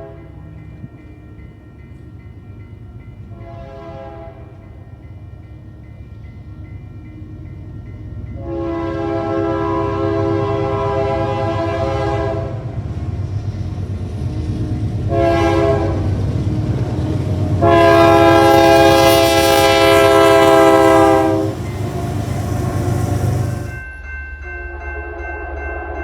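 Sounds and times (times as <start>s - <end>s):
low train rumble: 0.0s - 26.0s
locomotive air horn chord: 3.4s - 4.6s, 8.4s - 12.7s, 15.1s - 16.1s, 17.5s - 21.7s.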